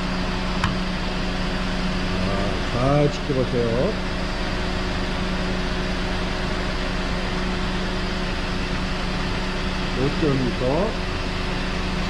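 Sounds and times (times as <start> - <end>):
air rushing from blower fan: 0.0 - 3.3
constant low hum: 0.0 - 12.0.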